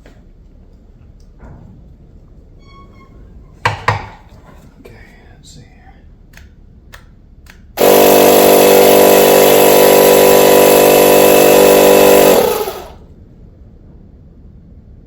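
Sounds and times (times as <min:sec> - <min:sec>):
small electric air pump running: 0:07.8 - 0:13.0.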